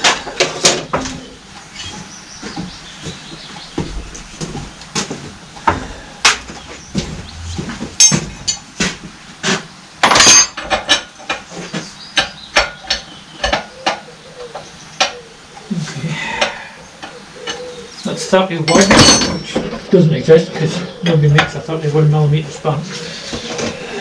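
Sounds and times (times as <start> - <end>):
steel spanners clinking: 10.1 - 10.7, 18.6 - 19.6.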